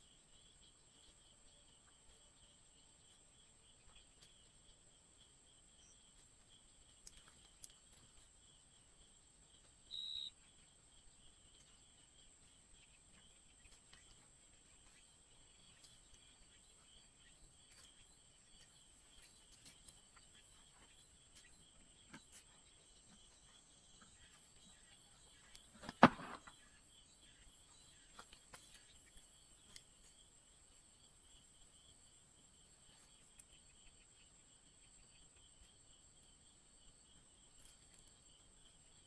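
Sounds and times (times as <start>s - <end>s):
faint ticks: 6.2s - 8.3s, 28.1s - 30.2s, 32.8s - 34.0s, 37.4s - 39.0s
insect chirring: 6.9s - 10.5s.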